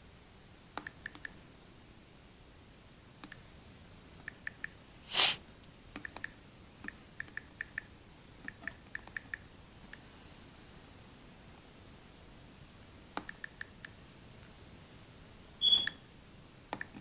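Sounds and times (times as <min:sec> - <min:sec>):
person sniffing: 0:05.0 - 0:05.4
calculator key beeps: 0:15.6 - 0:16.0.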